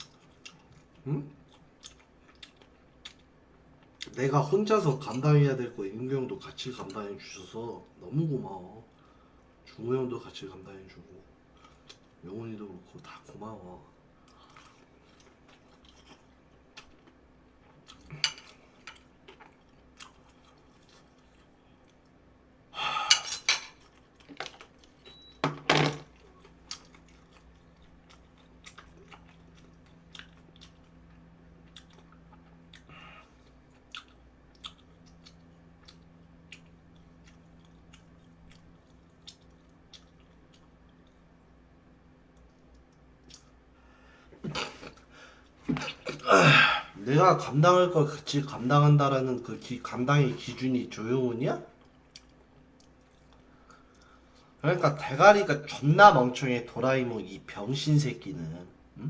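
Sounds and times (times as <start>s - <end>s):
chewing: 0.0s - 4.2s, 26.2s - 41.6s, 51.8s - 54.5s.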